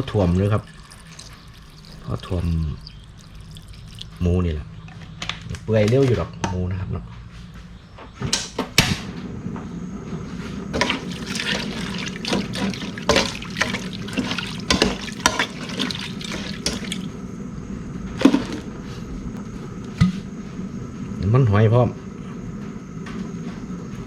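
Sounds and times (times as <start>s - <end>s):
water pouring into a pot: 0.0s - 4.3s, 10.8s - 17.2s, 18.2s - 18.7s
utensil knocking against a pot: 10.8s - 17.0s.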